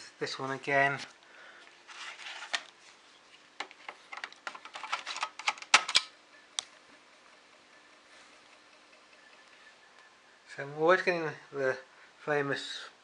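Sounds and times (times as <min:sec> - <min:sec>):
faint steady hum: 0:00.0 - 0:13.0
plastic clicks and clatter: 0:03.6 - 0:06.1.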